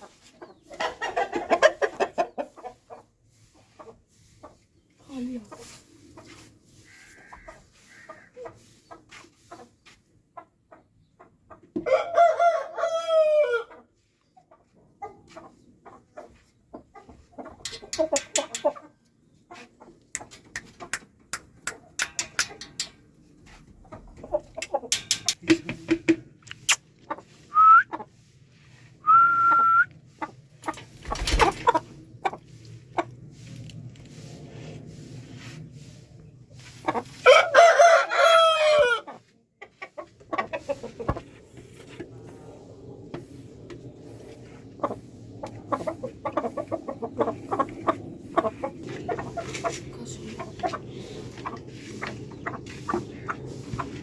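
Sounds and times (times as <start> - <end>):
chickens clucking: 0.0 - 33.6, 34.3 - 54.0
rooster crowing: 11.9 - 13.7, 37.3 - 39.1.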